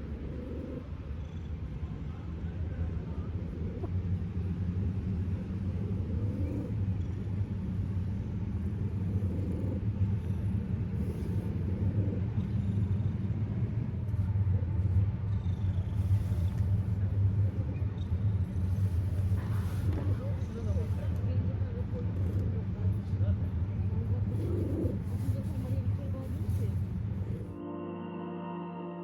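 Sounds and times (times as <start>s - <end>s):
cat purring: 0.0s - 27.6s.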